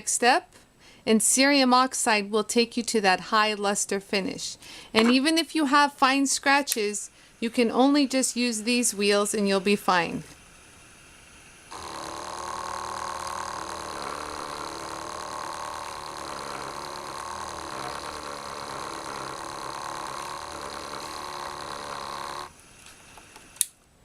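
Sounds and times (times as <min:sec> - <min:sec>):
polisher motor hum and whine: 0:11.7 - 0:22.6.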